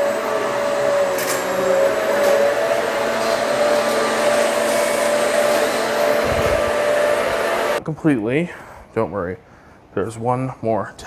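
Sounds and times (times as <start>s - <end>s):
upright vacuum cleaner running: 0.0s - 7.8s.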